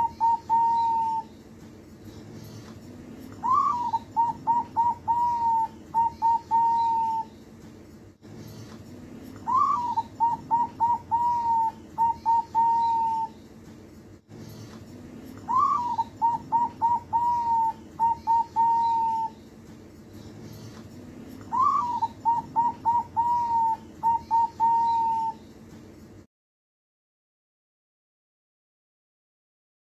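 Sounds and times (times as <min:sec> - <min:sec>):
dove cooing: 0:00.0 - 0:01.3, 0:03.4 - 0:07.3, 0:09.4 - 0:13.4, 0:15.4 - 0:19.4, 0:21.4 - 0:25.4.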